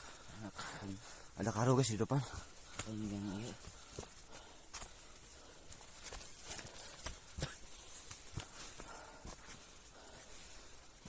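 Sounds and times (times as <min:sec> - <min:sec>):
footsteps on forest trail: 0:00.0 - 0:11.0.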